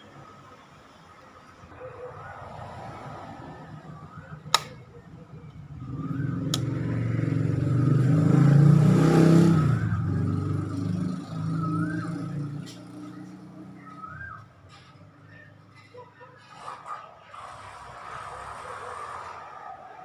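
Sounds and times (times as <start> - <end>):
vehicle engine passing by: 1.7 - 15.8, 16.4 - 20.0
sharp clicks: 4.5 - 4.8, 6.5 - 6.7.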